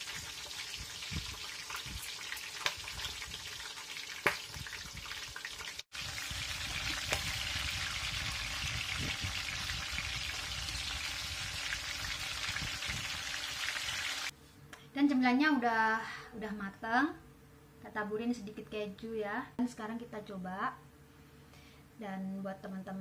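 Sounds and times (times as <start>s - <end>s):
oil crackles: 0.0s - 8.6s
chillies sizzling in hot oil: 0.0s - 14.3s.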